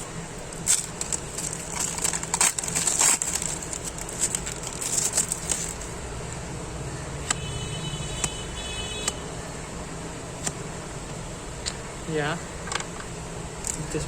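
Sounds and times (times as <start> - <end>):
foil wrapper crinkling and tearing: 0.5 - 5.9.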